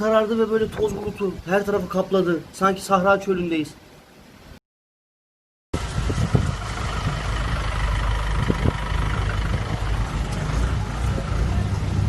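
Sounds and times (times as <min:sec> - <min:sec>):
vehicle engine rumbling: 0:05.8 - 0:12.0.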